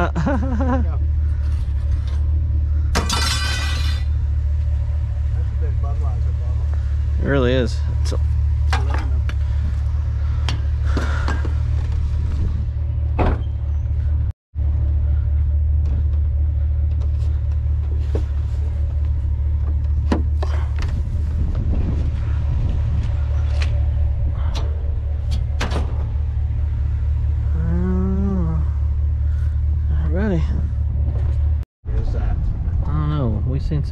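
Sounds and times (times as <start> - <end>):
engine and road rumble: 0.0 - 33.9.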